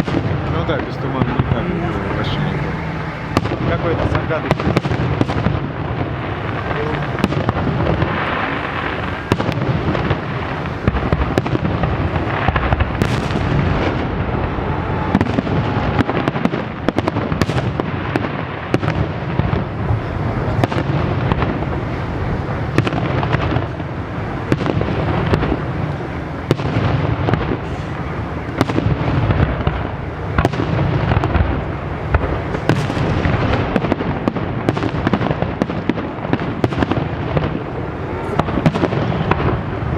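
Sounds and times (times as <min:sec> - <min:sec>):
fireworks bangs and booms: 0:00.0 - 0:39.9
fireworks crackle: 0:00.0 - 0:39.9.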